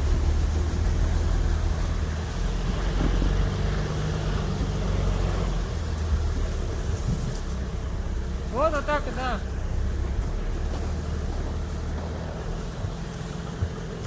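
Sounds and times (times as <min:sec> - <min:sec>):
car engine rumble: 0:00.0 - 0:14.0
road noise: 0:00.0 - 0:14.0.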